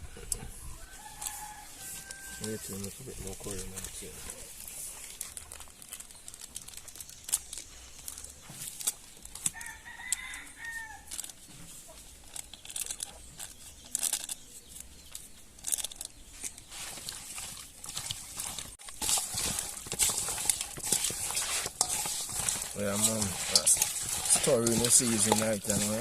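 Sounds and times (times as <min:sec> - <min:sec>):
rooster crowing: 0:00.0 - 0:02.7, 0:09.5 - 0:11.1
clicks and rustling: 0:11.1 - 0:26.0.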